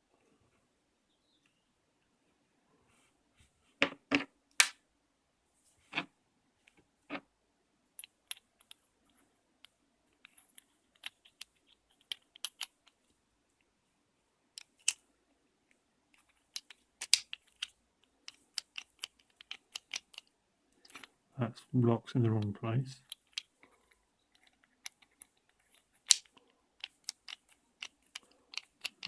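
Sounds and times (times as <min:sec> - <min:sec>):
small metal parts clicking: 0:08.0 - 0:08.8, 0:10.2 - 0:13.0, 0:14.6 - 0:15.0, 0:16.2 - 0:21.1, 0:23.0 - 0:29.0.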